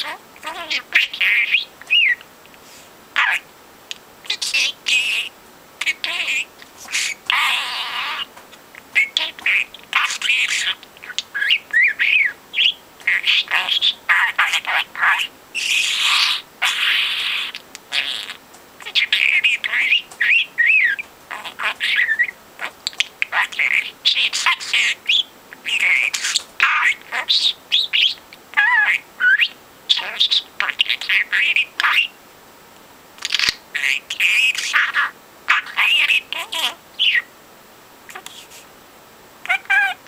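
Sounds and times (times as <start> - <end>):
budgerigar chattering: 0.0 - 2.2, 3.2 - 3.5, 4.3 - 32.2, 33.2 - 37.3, 39.4 - 40.0.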